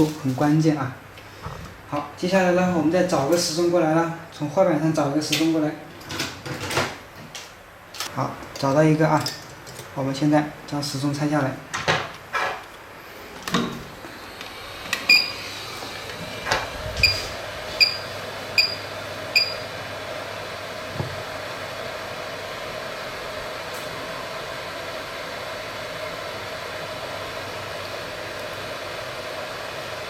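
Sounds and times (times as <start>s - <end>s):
short electronic beeps: 18.6s - 18.8s, 19.4s - 19.6s.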